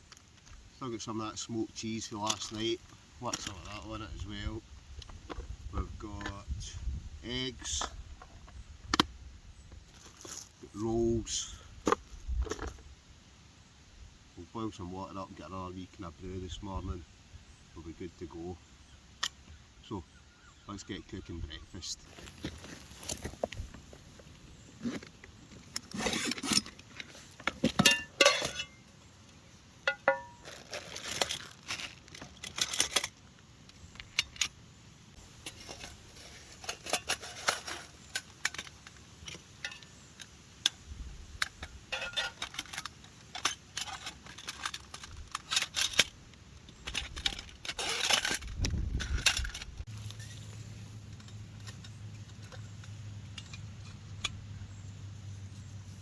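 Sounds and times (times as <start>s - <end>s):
cookware clinking and rattling: 27.6s - 28.8s, 29.9s - 31.3s, 41.5s - 46.0s.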